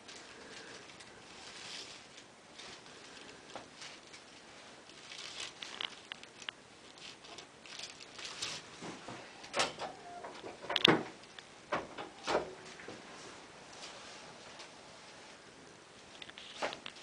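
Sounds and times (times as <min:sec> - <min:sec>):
soft rustling and light clicks: 0:00.0 - 0:11.5
neck joint cracking: 0:04.9 - 0:12.0.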